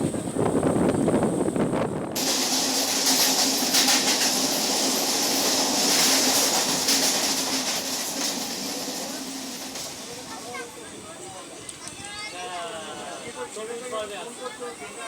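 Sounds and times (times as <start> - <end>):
train wheel and wind noise: 0.0 - 15.0
rail clicks: 2.2 - 10.9.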